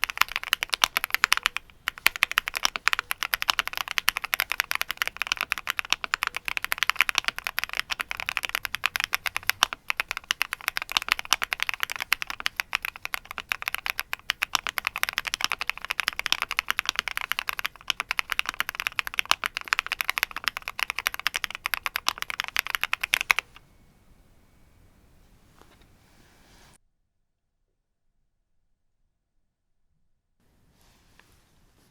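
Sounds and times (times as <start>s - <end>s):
mechanical keyboard typing: 0.0s - 23.6s.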